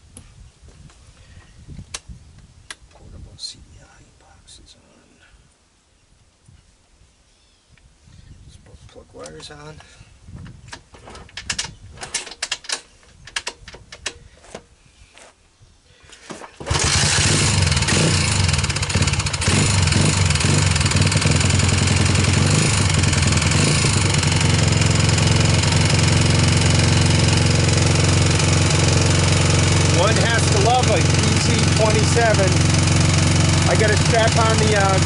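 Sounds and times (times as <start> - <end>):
engine running: 16.6 - 35.0.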